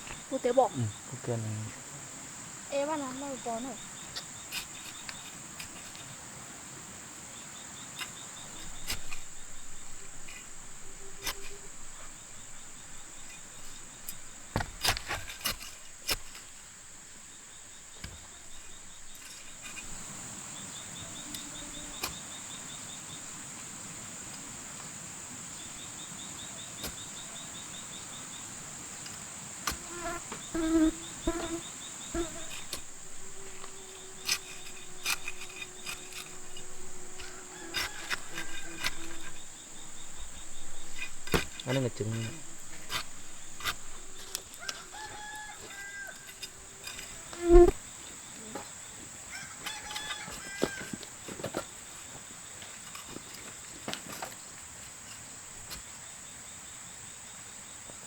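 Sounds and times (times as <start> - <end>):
cricket-like insect trills: 0.0 - 58.0
insect drone: 0.0 - 58.0.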